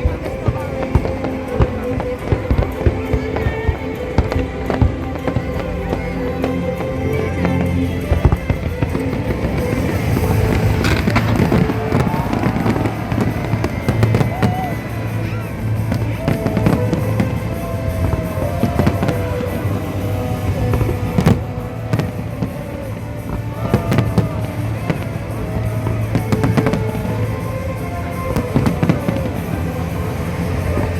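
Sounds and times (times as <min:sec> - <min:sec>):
music with long low notes: 0:00.0 - 0:30.9
faint firework bangs: 0:06.8 - 0:30.9.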